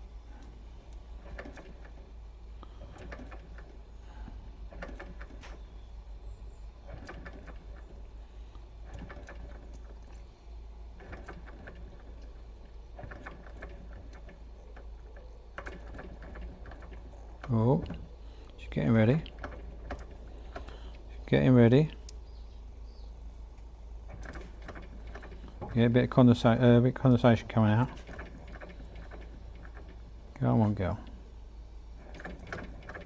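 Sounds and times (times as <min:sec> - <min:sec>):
boiler humming and hissing: 0:00.0 - 0:33.0.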